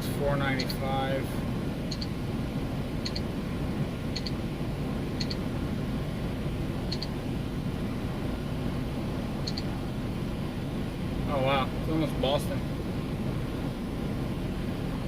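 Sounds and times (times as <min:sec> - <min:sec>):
truck engine idling: 0:00.0 - 0:15.0
faint double ticks: 0:01.9 - 0:02.1, 0:03.0 - 0:03.3, 0:04.2 - 0:04.4, 0:05.2 - 0:05.4, 0:06.9 - 0:07.1, 0:09.4 - 0:09.7.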